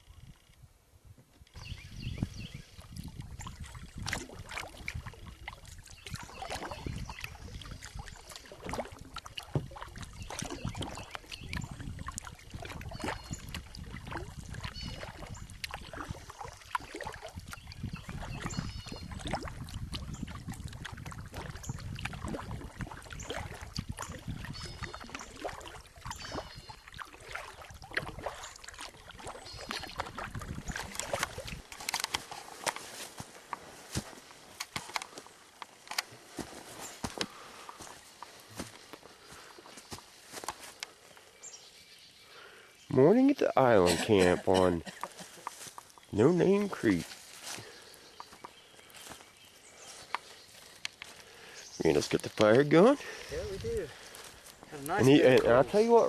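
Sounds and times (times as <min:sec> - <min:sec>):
paddle strokes in water: 0:01.5 - 0:41.6, 0:43.1 - 0:56.0
paddle knocking against hull: 0:08.6 - 0:16.2.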